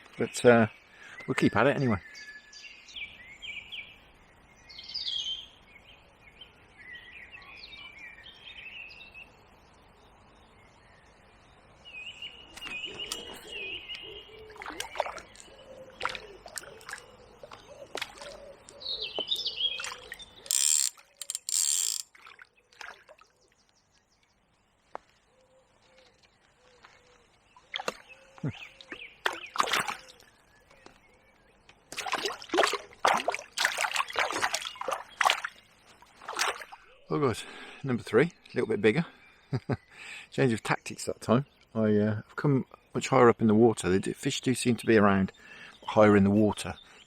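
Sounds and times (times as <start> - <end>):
birds calling: 12.4 - 22.0
fishing tackle clicks: 20.5 - 22.1
splashing at water surface: 29.2 - 30.0, 31.9 - 35.5.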